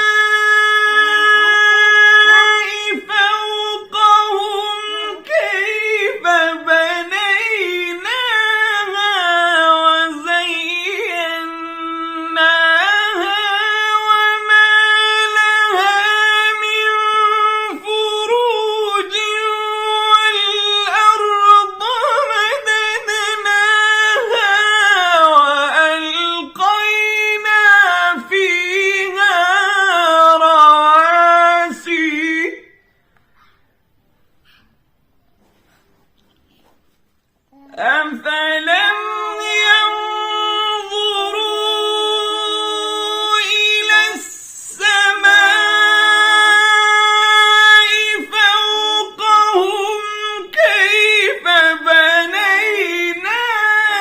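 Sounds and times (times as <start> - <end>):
child reciting melodically: 37.5 - 44.2.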